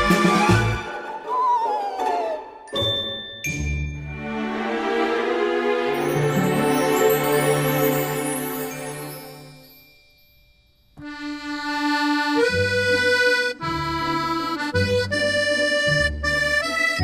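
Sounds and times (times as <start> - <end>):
sustained chords music: 4.1 - 9.6.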